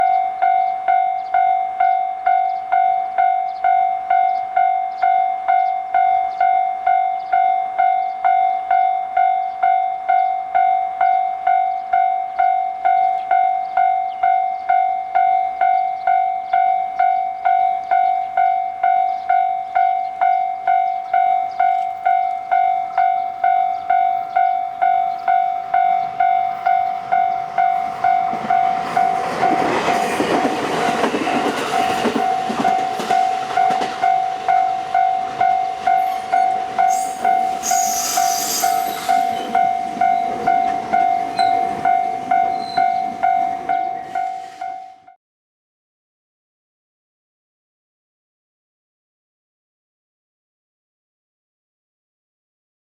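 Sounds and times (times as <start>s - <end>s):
level crossing warning bell: 0.0s - 45.2s
approaching train rushing: 19.8s - 45.2s.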